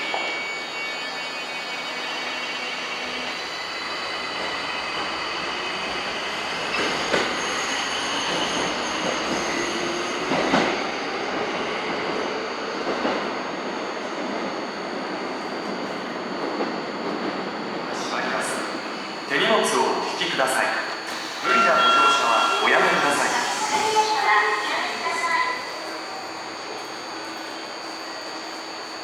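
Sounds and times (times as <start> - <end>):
train wheels squealing: 0.0 - 29.0.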